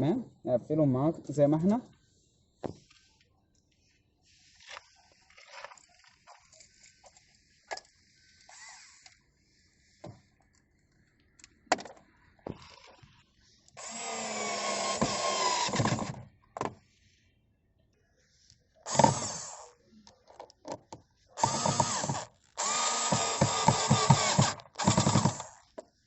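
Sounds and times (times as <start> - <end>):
power screwdriver running: 13.8 - 16.1, 18.9 - 19.7, 21.4 - 25.7.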